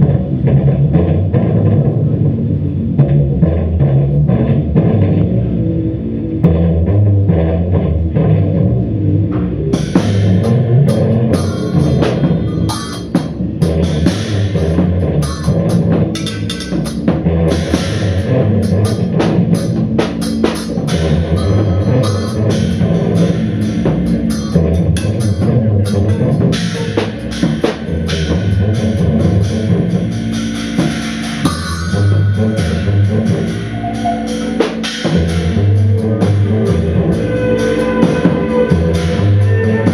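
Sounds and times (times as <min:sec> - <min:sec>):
low bass notes: 0:00.0 - 0:39.9
drum kit with cymbals: 0:09.4 - 0:39.9
sustained guitar: 0:31.9 - 0:39.9.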